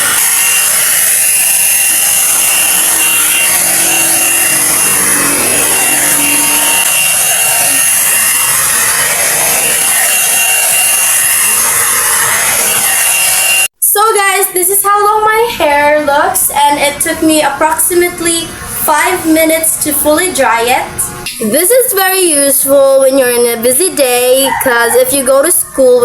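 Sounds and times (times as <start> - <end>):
hot air brush whirring: 0.0 - 13.7.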